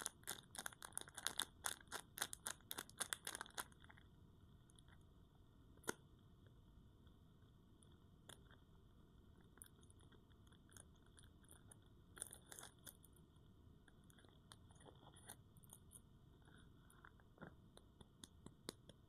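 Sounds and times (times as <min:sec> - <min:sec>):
soap wrapper crackling: 0:00.0 - 0:04.0.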